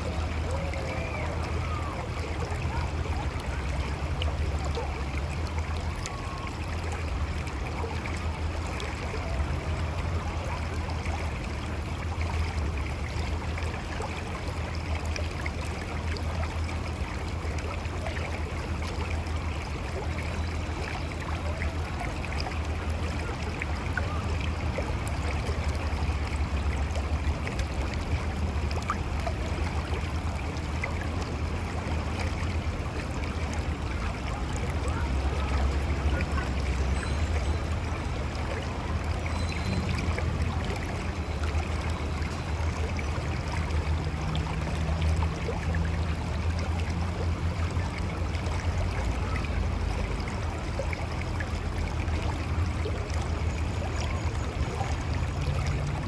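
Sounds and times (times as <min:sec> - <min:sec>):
river flowing over rocks: 0:00.0 - 0:56.0.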